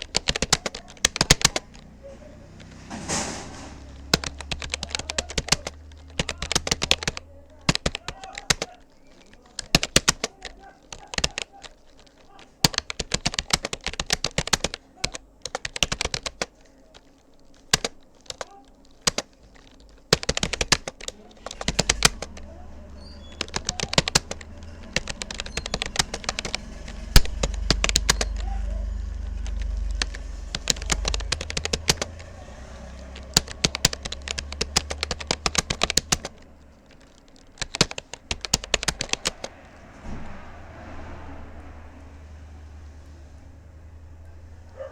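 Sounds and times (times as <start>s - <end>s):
keyboard typing clicks: 0.0s - 40.6s
low steady rumble: 21.1s - 44.9s.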